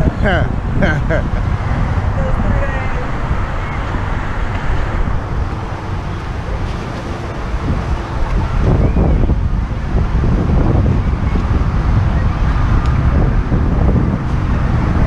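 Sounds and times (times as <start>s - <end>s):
faint voices: 0.0s - 9.9s
wind buffeting microphone: 0.0s - 15.0s.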